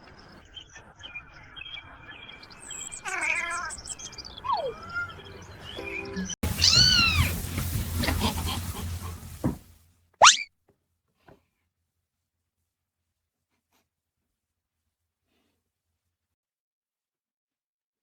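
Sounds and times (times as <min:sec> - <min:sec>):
cat meowing: 0:03.0 - 0:03.7, 0:06.5 - 0:07.4, 0:10.2 - 0:10.5
faint chirps: 0:10.2 - 0:10.5.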